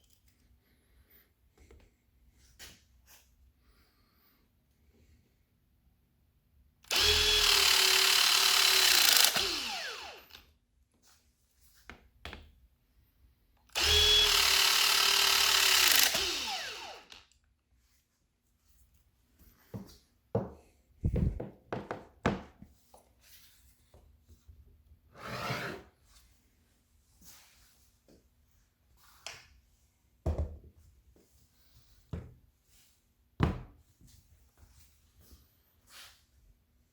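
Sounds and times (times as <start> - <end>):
power tool motor whine: 6.9 - 10.4, 13.8 - 17.2.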